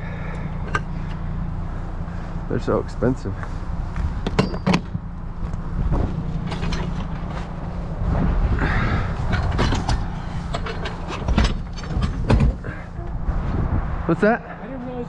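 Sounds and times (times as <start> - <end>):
low rumble: 3.6 - 14.1
metal clanks and knocks: 4.2 - 7.6, 8.7 - 13.1.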